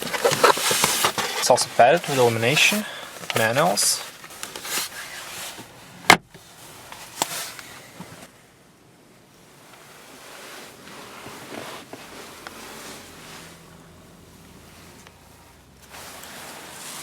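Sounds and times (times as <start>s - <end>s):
handling noise: 0.0s - 8.3s.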